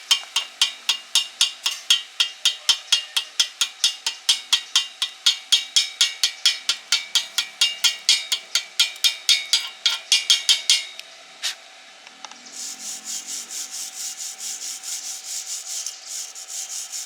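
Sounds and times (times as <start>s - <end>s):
sharp metallic taps: 0.0s - 11.0s
wire brush scrubbing metal: 0.0s - 11.0s, 12.6s - 17.0s.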